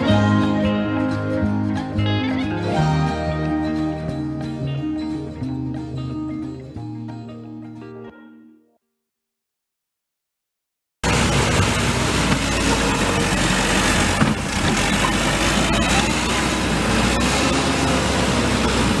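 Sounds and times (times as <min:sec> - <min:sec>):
construction machine engine running: 0:11.0 - 0:19.0
construction site noise: 0:11.0 - 0:19.0.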